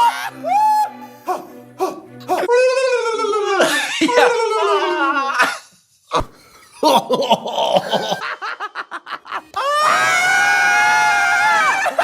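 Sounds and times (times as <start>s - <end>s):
person laughing: 1.3s - 9.6s.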